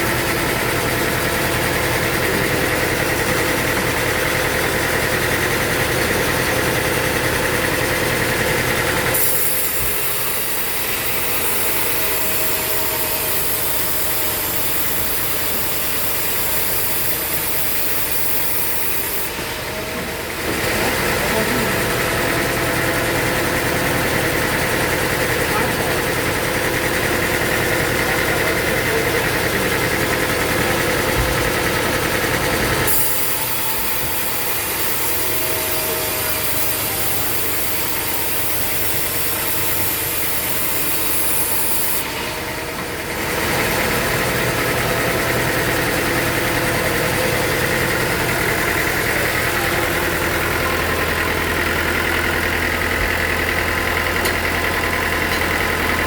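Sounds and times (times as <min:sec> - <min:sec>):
machine engine running: 0:00.0 - 0:56.0.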